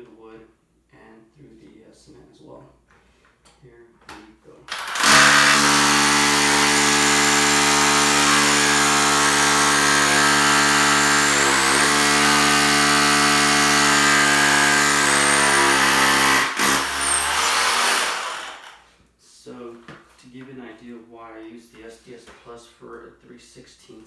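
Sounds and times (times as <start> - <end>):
rotary hammer drilling: 4.7 - 18.8.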